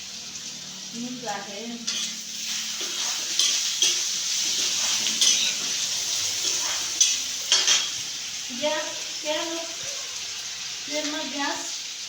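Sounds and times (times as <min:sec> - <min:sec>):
potatoes sizzling in hot oil: 0:00.0 - 0:12.0
spatula scraping a pan: 0:01.9 - 0:08.2.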